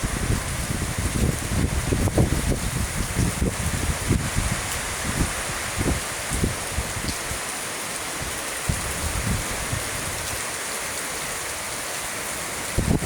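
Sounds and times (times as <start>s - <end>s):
wind buffeting microphone: 0.0s - 7.5s, 8.2s - 10.4s, 12.7s - 13.0s
heavy rain pouring: 0.0s - 13.0s.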